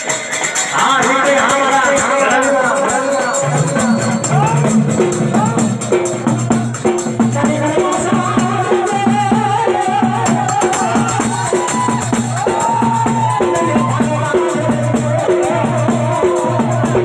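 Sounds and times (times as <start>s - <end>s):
shaker-like percussion: 0.0s - 17.0s
gliding melodic line: 2.6s - 6.0s.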